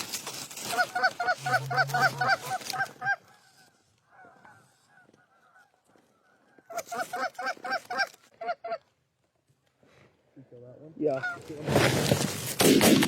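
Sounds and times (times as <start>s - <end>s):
goose honking: 0.6s - 5.8s, 6.6s - 8.8s.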